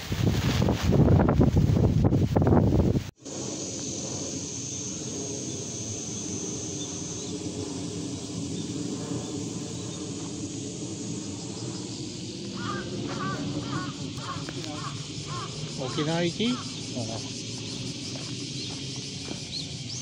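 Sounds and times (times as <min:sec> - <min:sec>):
outdoor background noise: 0:00.0 - 0:20.0
thin high whine: 0:02.3 - 0:20.0
crows cawing: 0:12.5 - 0:16.8.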